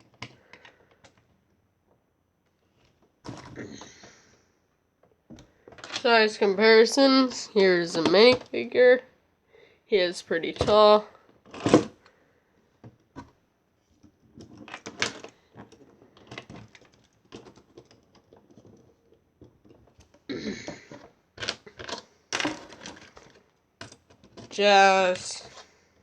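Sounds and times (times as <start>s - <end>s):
plastic pieces clicking: 14.3s - 24.6s.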